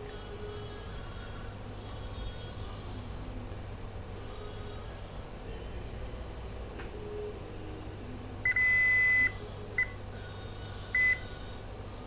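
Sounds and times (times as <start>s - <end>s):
multimeter beeping: 8.5s - 10.0s, 11.0s - 11.2s.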